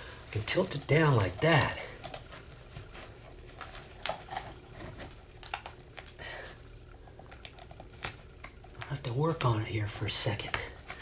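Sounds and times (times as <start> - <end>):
plastic scraping and rustling: 0.0 - 6.2.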